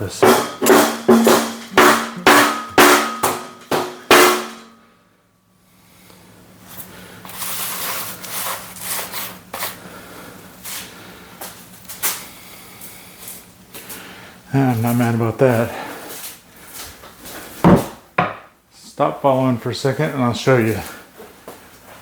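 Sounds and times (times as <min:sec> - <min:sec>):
hammer blows on steel: 0:00.0 - 0:04.8.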